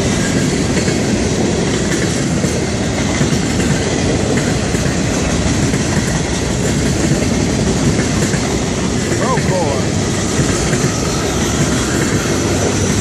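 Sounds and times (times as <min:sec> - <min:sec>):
train wheels on rails: 0:00.0 - 0:13.0.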